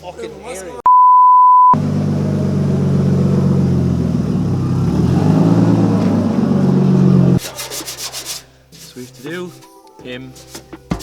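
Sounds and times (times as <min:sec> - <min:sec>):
censor bleep: 0:00.9 - 0:01.8
car engine running: 0:01.8 - 0:07.4.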